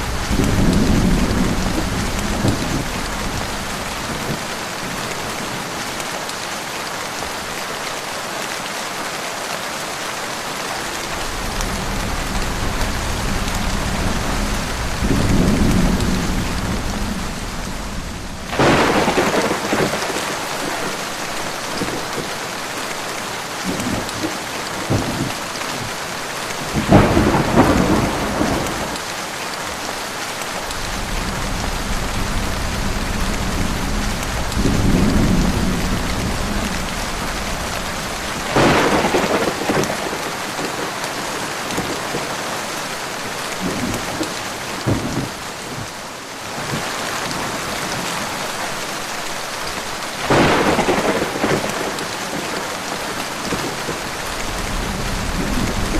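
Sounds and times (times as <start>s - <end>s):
rolling thunder: 0.0s - 5.0s, 11.0s - 21.0s, 26.7s - 29.0s, 30.6s - 41.0s, 50.3s - 52.7s, 53.5s - 55.9s
heavy rain falling: 0.0s - 55.9s.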